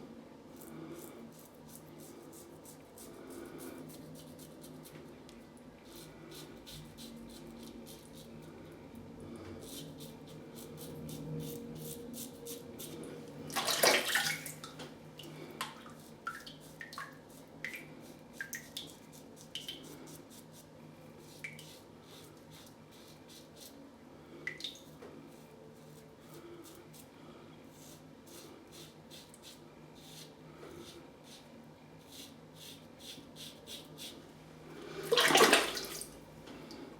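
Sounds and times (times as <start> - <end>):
water splashing in a sink: 13.5 - 14.9, 35.0 - 36.2.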